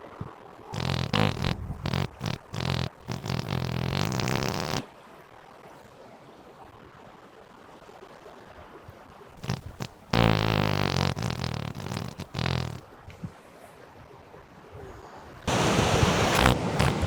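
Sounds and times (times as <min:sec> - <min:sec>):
fake fart noises: 0:00.7 - 0:04.9, 0:09.4 - 0:12.8, 0:15.5 - 0:17.0.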